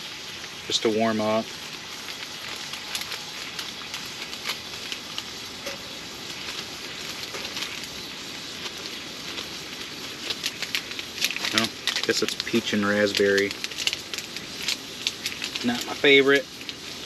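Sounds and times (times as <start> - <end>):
fire crackling: 0.0 - 17.0
wood fire hissing: 0.0 - 17.0.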